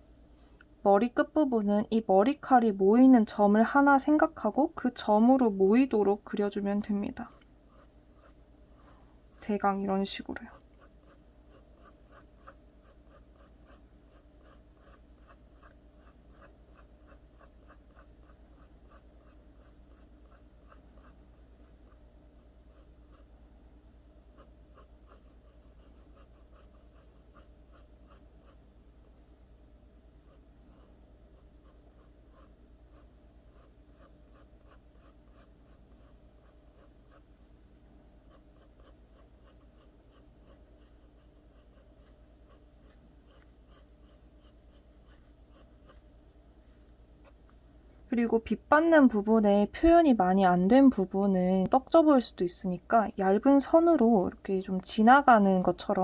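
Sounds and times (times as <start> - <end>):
pencil strokes on paper: 5.3 - 23.3, 24.4 - 29.2, 30.2 - 37.6, 38.3 - 47.6.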